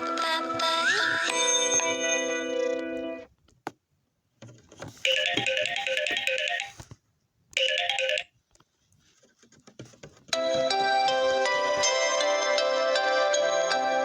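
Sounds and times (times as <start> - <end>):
phone ringtone: 5.0 - 6.8, 7.6 - 8.3.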